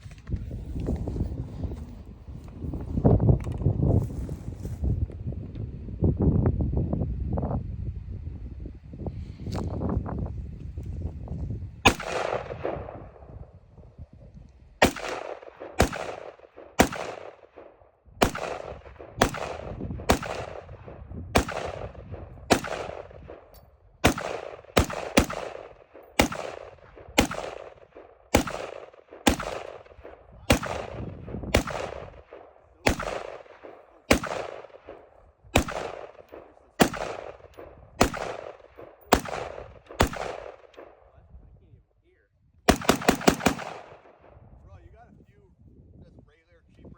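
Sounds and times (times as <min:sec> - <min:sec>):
gunshots with echo: 0:11.9 - 0:13.5, 0:14.8 - 0:41.1, 0:42.7 - 0:44.3.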